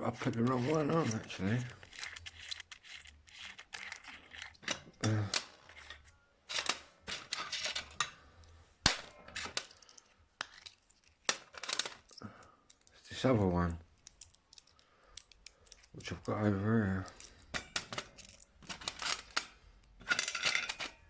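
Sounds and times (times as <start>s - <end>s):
small objects clattering on workbench: 17.1s - 21.0s.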